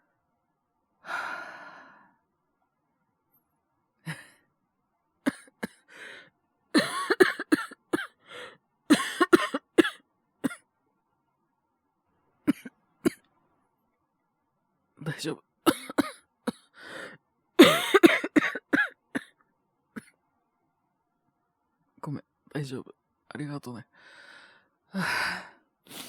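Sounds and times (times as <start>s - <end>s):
man coughing: 5.3s - 5.8s, 6.8s - 8.1s, 8.9s - 10.6s, 12.5s - 12.7s, 15.7s - 16.6s, 17.6s - 19.3s.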